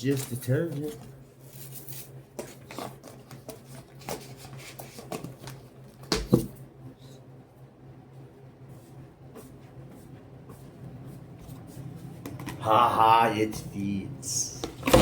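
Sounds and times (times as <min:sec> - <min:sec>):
steady low hum: 0:05.6 - 0:15.0.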